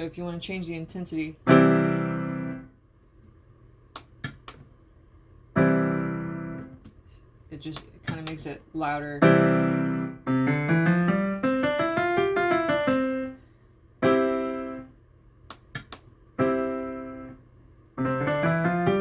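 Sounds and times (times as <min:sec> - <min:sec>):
digital piano playing: 0:01.5 - 0:02.7, 0:05.6 - 0:06.7, 0:09.2 - 0:13.4, 0:14.0 - 0:14.9, 0:16.4 - 0:17.4, 0:18.0 - 0:19.0
short clicks: 0:15.4 - 0:16.1.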